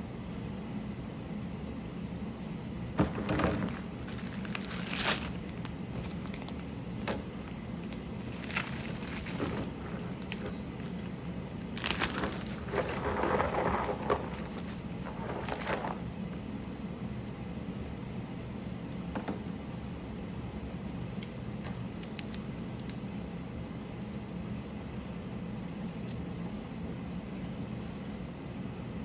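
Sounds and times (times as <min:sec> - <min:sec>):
plastic clicks and rattling: 0:22.0 - 0:23.0.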